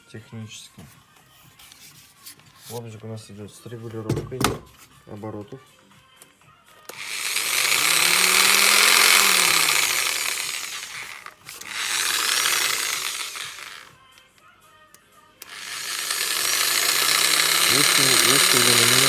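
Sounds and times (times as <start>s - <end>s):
jigsaw motor speeding up: 6.9s - 14.0s, 15.4s - 19.0s.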